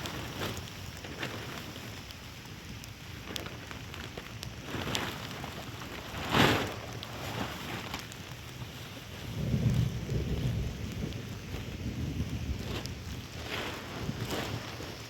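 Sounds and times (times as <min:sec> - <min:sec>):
heavy rain falling: 0:00.0 - 0:15.0
rain rush: 0:03.3 - 0:15.0.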